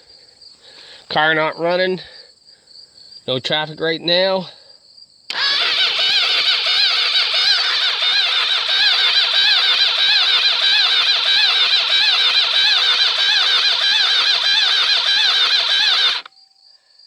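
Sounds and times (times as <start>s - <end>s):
starter cranking engine: 5.3s - 16.3s.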